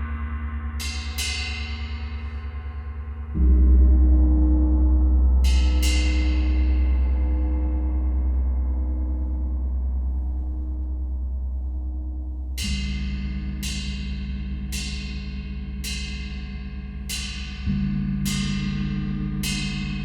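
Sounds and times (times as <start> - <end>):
gong ringing with deep hum: 0.0 - 20.0
low tone: 0.0 - 20.0
bright metallic strikes: 12.6 - 20.0.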